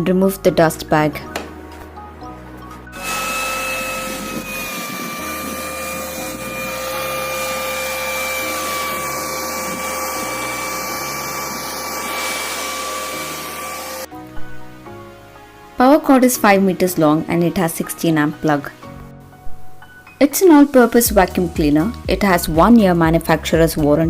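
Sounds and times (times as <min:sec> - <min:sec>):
vacuum cleaner blower whine: 0:03.0 - 0:14.1.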